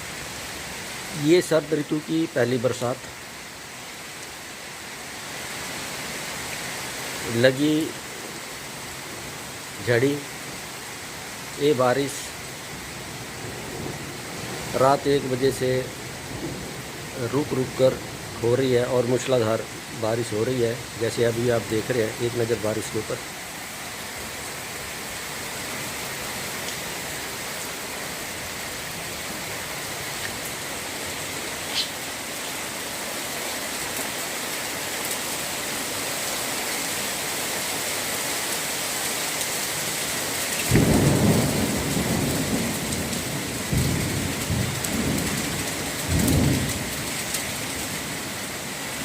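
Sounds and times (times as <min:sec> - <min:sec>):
heavy rain hissing: 0:00.0 - 0:49.0.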